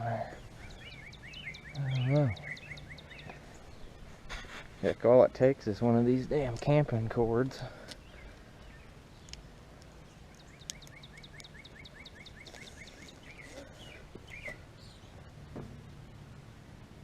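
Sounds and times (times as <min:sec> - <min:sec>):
bird chirps: 0:00.0 - 0:04.3, 0:10.0 - 0:15.3
faint background noise: 0:00.0 - 0:17.0
songbird singing: 0:00.0 - 0:17.0.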